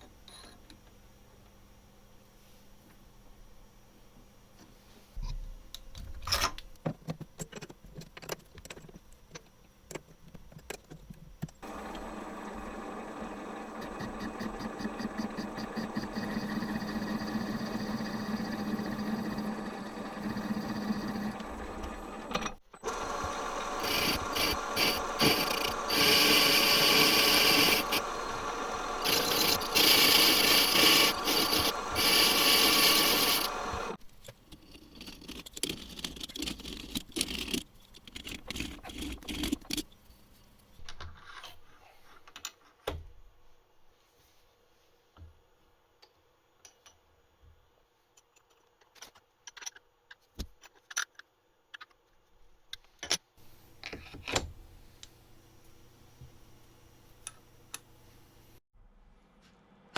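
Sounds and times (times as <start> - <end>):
harsh metal cutting noise: 11.6 - 34.0
small power tool humming: 11.6 - 34.0.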